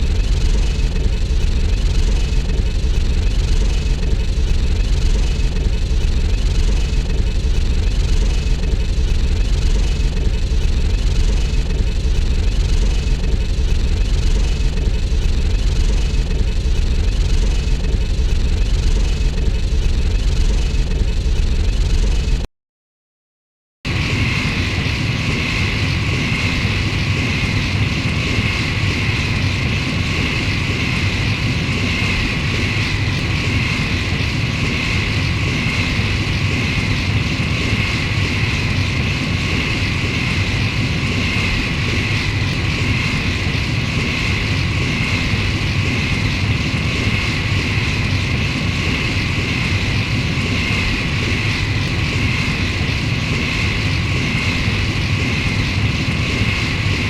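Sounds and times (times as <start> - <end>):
spaceship engine drone: 0.0 - 22.5, 23.9 - 57.0.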